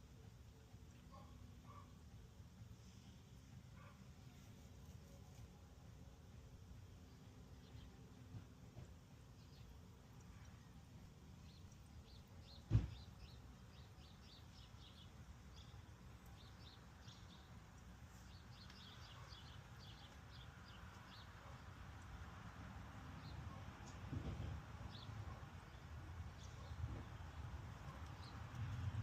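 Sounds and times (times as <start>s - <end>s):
birds chirping: 11.4s - 21.7s
sharp knock: 12.7s - 13.0s.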